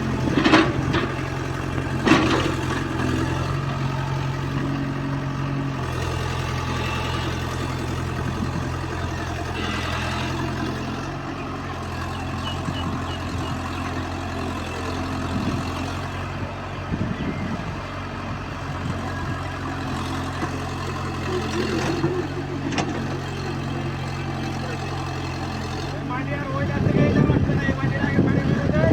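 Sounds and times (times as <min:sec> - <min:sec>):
excavator diesel engine running: 0:00.0 - 0:28.9
knocks and clatters: 0:00.2 - 0:03.6.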